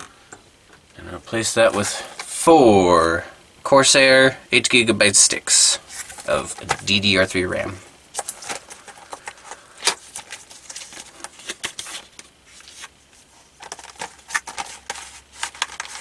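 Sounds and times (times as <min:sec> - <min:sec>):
plastic packaging crackling: 0:13.6 - 0:16.0.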